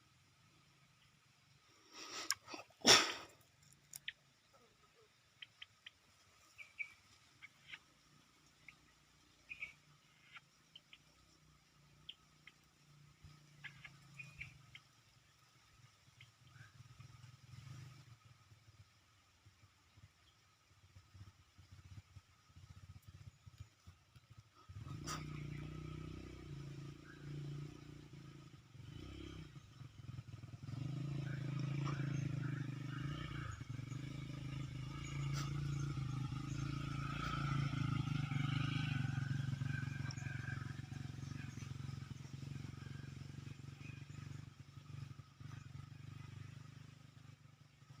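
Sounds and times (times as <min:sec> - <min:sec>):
engine running: 0:20.3 - 0:48.0.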